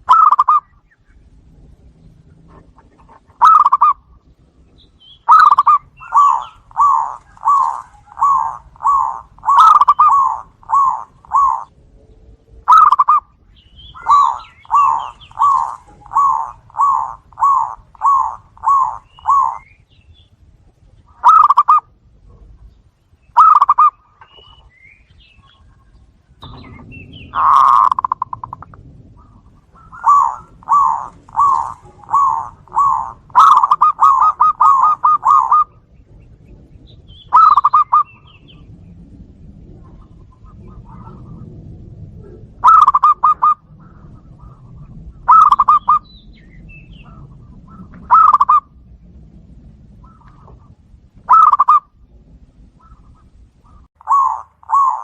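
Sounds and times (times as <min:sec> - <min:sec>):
doves cooing: 0:00.0 - 0:55.0
small bird chirps: 0:04.7 - 0:11.7, 0:12.7 - 0:20.4.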